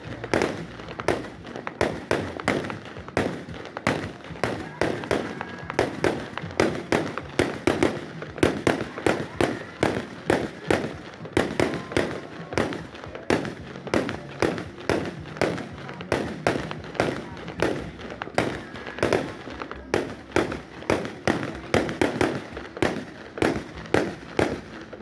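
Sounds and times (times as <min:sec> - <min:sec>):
fireworks exploding: 0:00.0 - 0:25.0.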